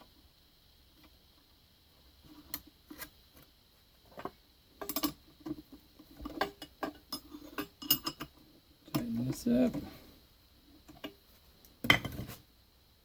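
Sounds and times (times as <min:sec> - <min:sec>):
light metallic clicks and clinks: 0:04.8 - 0:05.2, 0:06.2 - 0:09.3.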